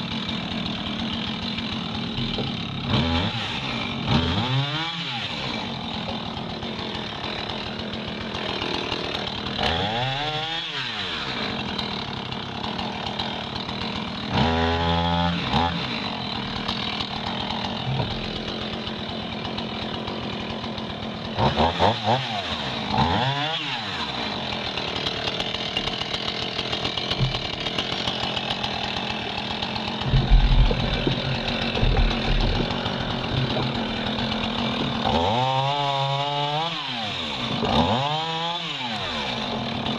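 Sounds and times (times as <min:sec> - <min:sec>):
chainsaw cutting logs: 0:00.0 - 0:39.9
low thuds: 0:30.0 - 0:34.0.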